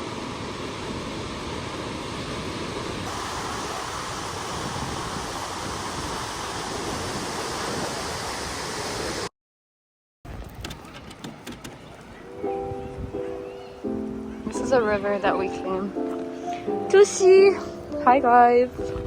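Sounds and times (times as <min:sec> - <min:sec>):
fast-flowing river water: 0:00.0 - 0:09.2.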